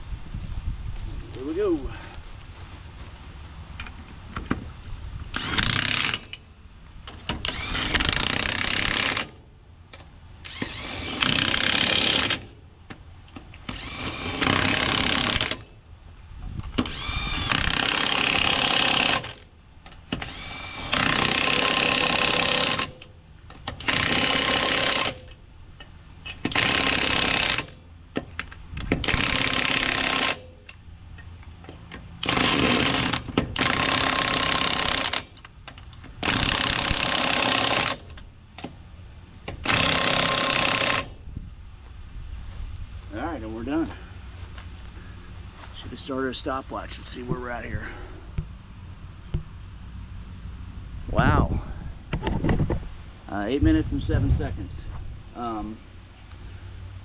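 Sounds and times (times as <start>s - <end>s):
impact wrench hammering lug nuts: 39.4s - 41.2s.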